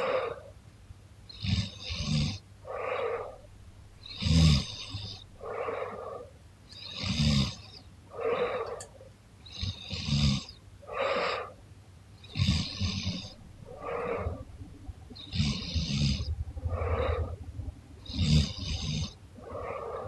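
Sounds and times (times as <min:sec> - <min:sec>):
breathy exhale: 0:12.4 - 0:20.0.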